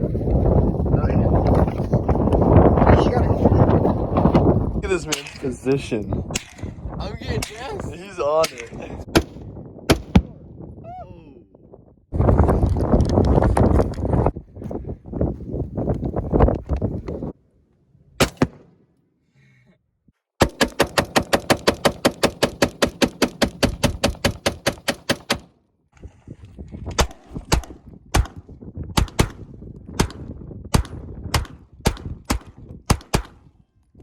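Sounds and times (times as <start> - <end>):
rifle gunfire: 20.4 - 25.5, 29.0 - 29.4, 30.0 - 33.4.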